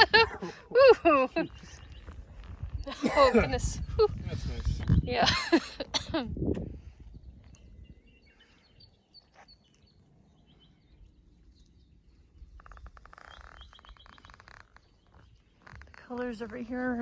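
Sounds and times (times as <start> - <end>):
bird chirps: 7.1 - 15.8.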